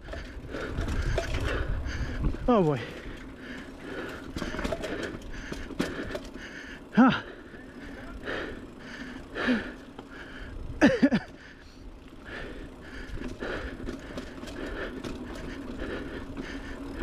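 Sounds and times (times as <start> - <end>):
bike clicks and rattles: 0.0 - 17.0
heavy rhythmic breathing: 0.0 - 17.0.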